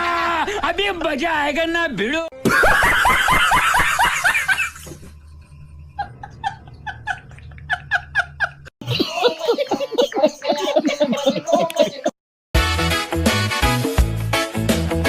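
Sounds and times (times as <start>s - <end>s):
group laughter and shrieks: 0.0s - 0.6s, 6.0s - 12.2s
person laughing: 2.4s - 4.9s, 6.0s - 12.2s
low hum: 4.8s - 8.7s
loud music with voices: 12.6s - 15.0s.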